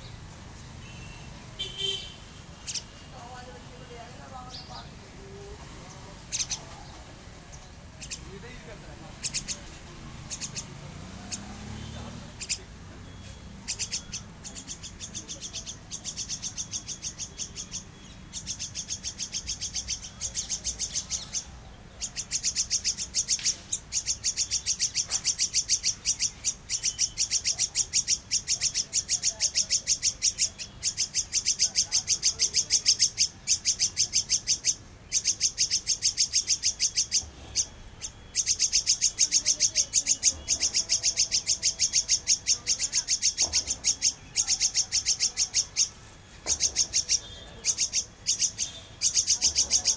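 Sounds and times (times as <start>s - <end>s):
squirrel chirping: 0.0s - 49.9s.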